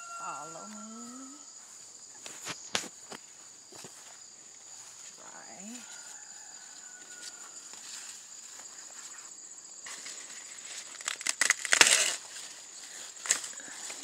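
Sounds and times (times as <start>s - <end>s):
high-pitched insect drone: 0.0s - 2.7s
dry corn leaves rustling: 4.7s - 14.0s.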